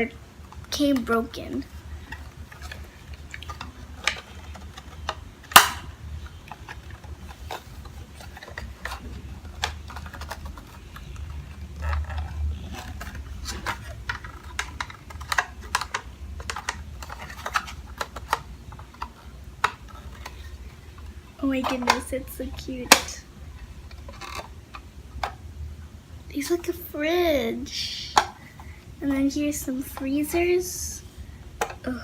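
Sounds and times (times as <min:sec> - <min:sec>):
plastic toy parts clicking: 0:02.0 - 0:22.1, 0:23.9 - 0:25.4.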